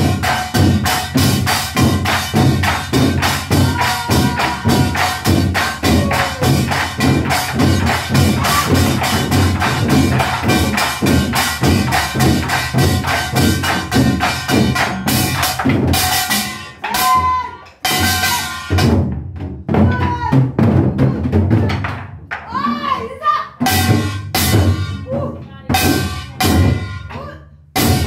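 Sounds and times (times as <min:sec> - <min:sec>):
pitched music: 0:00.0 - 0:17.2
barrel drums struck rapidly: 0:00.0 - 0:22.7, 0:23.6 - 0:26.9.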